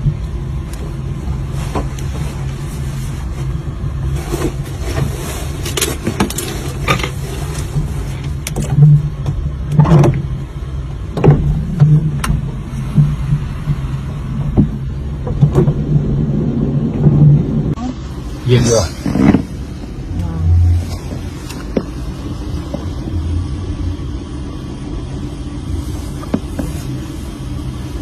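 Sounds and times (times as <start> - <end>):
low machine hum: 0.0 - 28.0.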